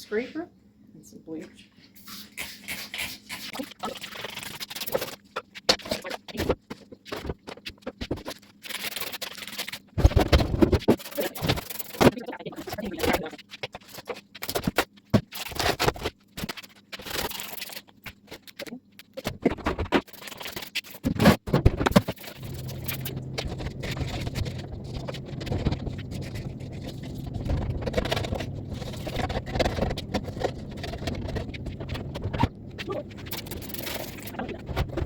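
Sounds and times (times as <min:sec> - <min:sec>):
scraper scraping surfaces: 0:19.4 - 0:35.0
steady low hum: 0:21.1 - 0:35.0.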